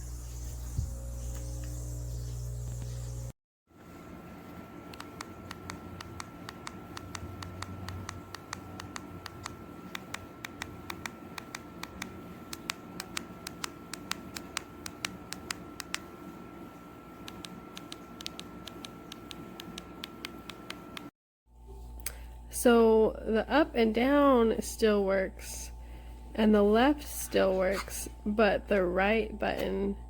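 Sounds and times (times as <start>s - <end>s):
low hum: 0.0s - 3.3s.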